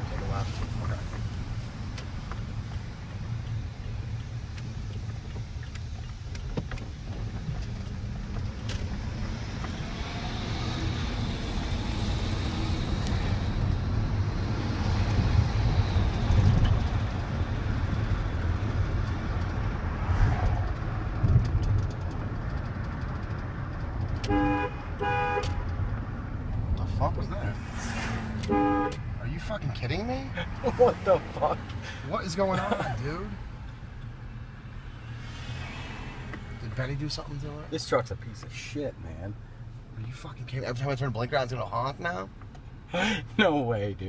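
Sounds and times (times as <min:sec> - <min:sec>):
engine and road rumble: 0:00.0 - 0:44.0
truck horn: 0:24.2 - 0:25.6, 0:28.4 - 0:29.0.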